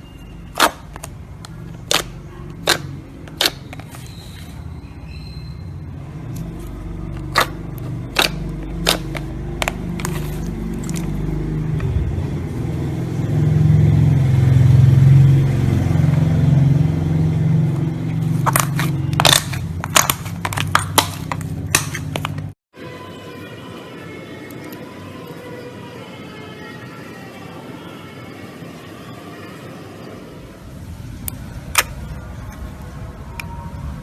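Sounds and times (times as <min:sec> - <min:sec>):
slime squelching: 0:00.1 - 0:04.6, 0:06.2 - 0:12.0, 0:17.7 - 0:22.5
air pops and clicks: 0:31.2 - 0:32.0.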